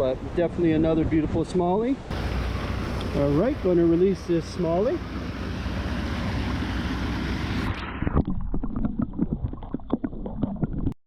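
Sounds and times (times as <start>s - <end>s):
creek water rushing: 2.0s - 8.2s
water splashing and sloshing: 4.9s - 11.0s.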